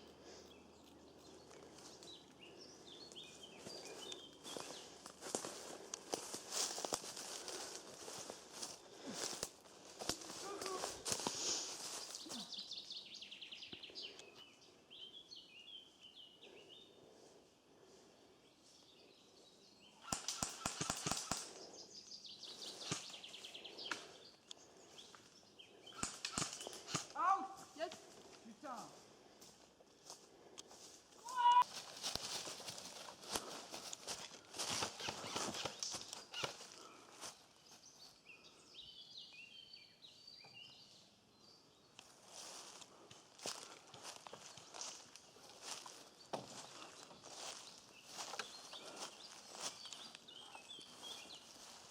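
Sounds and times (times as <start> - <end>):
small bird chirping: 19.8 - 27.3, 35.0 - 36.9, 43.6 - 51.9
footstep or rustle: 30.7 - 36.9.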